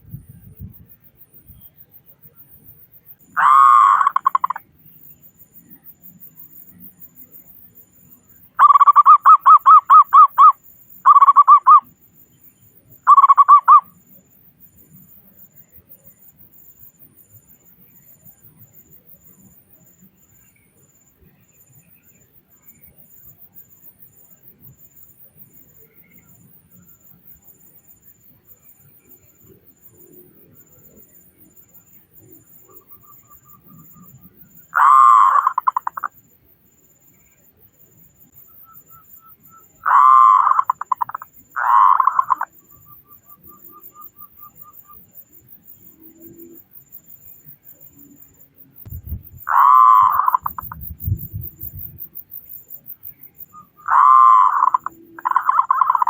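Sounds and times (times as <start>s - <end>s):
dove cooing: 3.4s - 4.6s, 34.8s - 36.1s, 39.8s - 42.5s, 49.5s - 50.7s, 53.8s - 56.0s.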